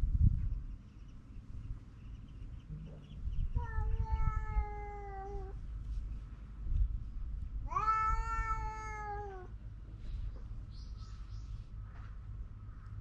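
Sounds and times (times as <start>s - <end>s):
cat meowing: 3.5s - 5.6s, 7.6s - 9.5s.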